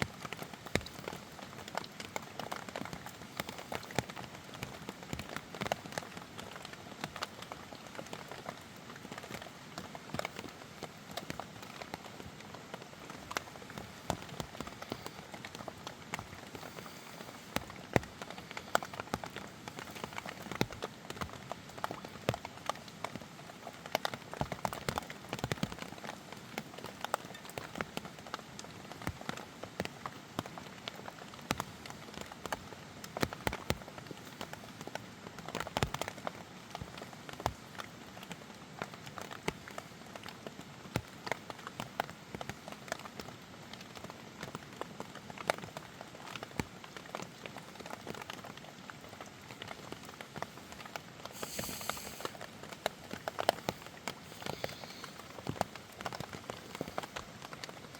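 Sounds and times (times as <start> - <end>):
raindrops ticking: 0.0 - 57.9
rain hissing: 0.1 - 20.6, 50.4 - 57.8.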